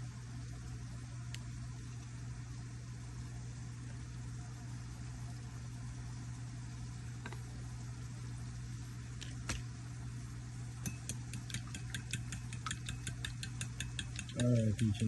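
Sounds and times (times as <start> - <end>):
steady low hum: 0.0 - 15.0
utensil clicking against a dish: 10.8 - 15.0.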